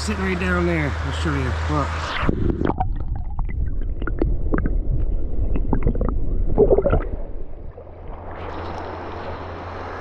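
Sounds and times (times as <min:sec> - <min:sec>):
low rumble: 0:02.0 - 0:09.6
shallow water sloshing: 0:02.4 - 0:09.8.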